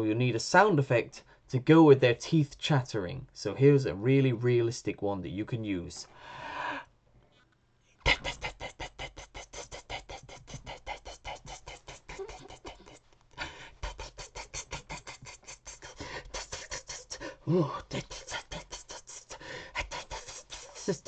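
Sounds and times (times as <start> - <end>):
teeth chattering by mouth: 8.1 - 21.0.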